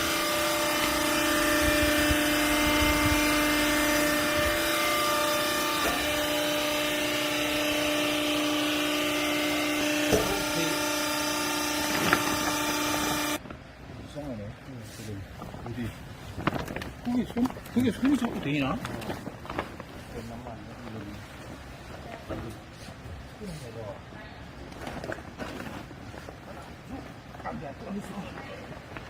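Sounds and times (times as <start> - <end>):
hydraulic pump motor whining: 0.0 - 13.4.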